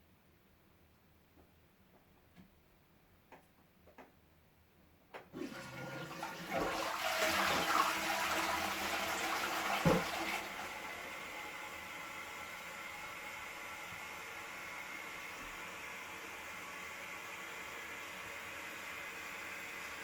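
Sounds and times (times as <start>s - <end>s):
toilet flushing: 5.3s - 20.0s
thump: 9.8s - 10.2s.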